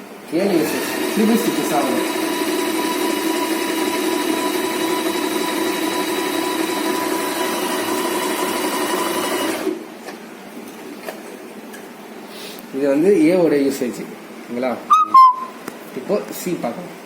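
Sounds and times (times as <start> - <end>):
electric sewing machine running: 0.4 - 9.8.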